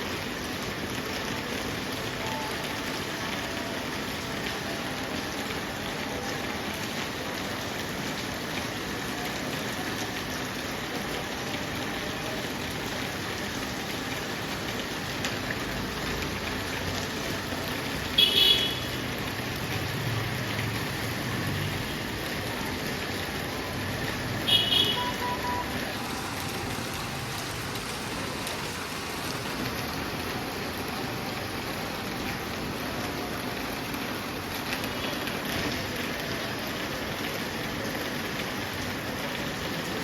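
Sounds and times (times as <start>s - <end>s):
steady rain falling: 0.0s - 40.0s.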